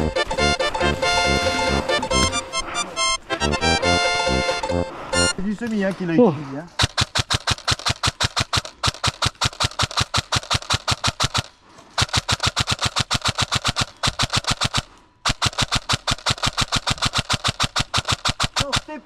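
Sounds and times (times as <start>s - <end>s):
airsoft gun firing: 6.8s - 19.0s.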